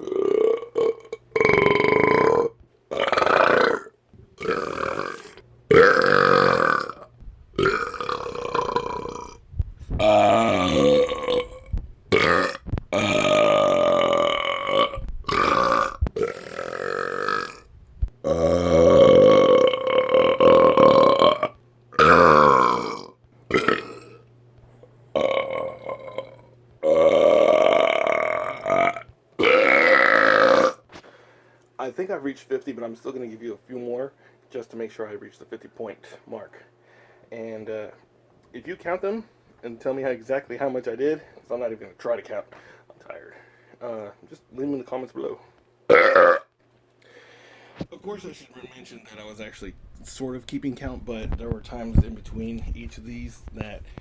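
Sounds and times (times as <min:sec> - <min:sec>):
man belching: 0:00.0 - 0:09.4, 0:10.0 - 0:24.2, 0:25.2 - 0:30.8, 0:45.9 - 0:46.5.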